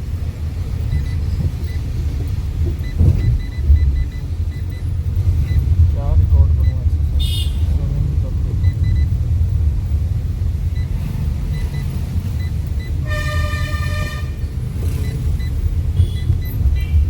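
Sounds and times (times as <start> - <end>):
car interior engine rumble: 0.0 - 17.0
vehicle horn: 7.2 - 7.7, 13.0 - 14.5.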